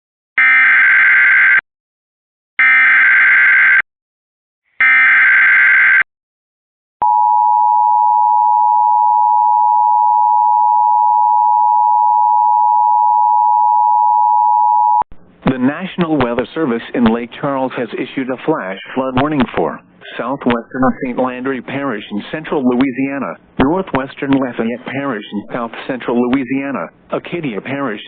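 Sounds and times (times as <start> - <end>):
warbling digital data tones: 20.4 - 21.2.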